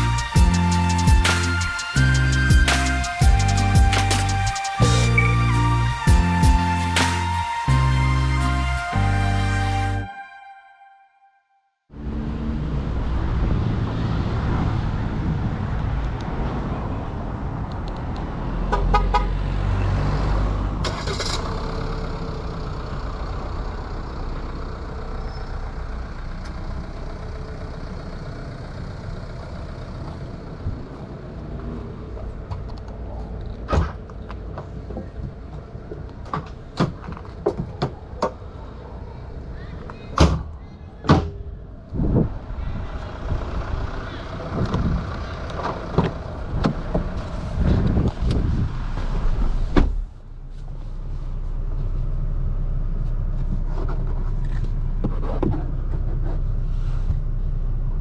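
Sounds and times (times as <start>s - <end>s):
pulsing horn-like tone: 0.0s - 12.1s
diesel engine running: 21.1s - 32.5s, 42.3s - 47.7s.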